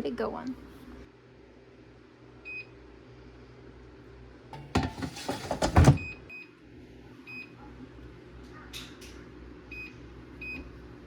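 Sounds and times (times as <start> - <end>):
food clattering and rustling: 4.6 - 6.2.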